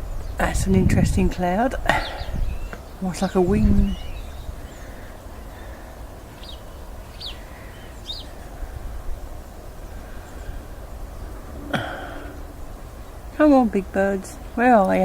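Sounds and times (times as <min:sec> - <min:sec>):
low outdoor rumble: 0:00.0 - 0:15.0
small bird chirping: 0:02.0 - 0:05.7, 0:06.3 - 0:08.6.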